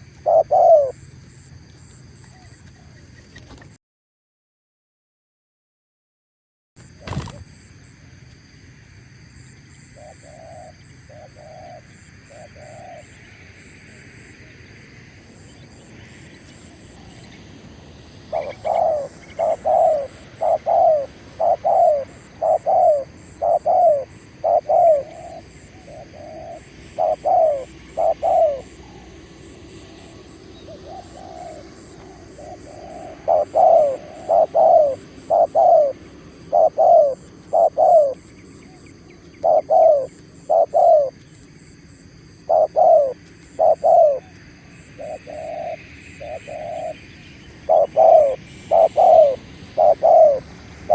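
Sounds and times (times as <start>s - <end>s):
dove cooing: 0.0s - 1.0s, 10.0s - 13.2s, 18.2s - 41.2s, 42.4s - 50.9s.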